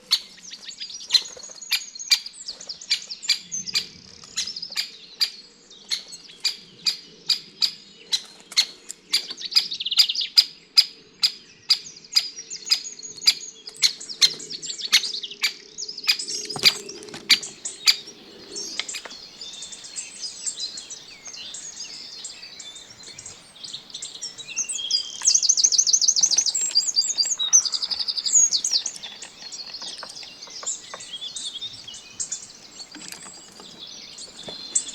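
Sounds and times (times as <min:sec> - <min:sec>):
songbirds chirping: 0:16.4 - 0:34.9.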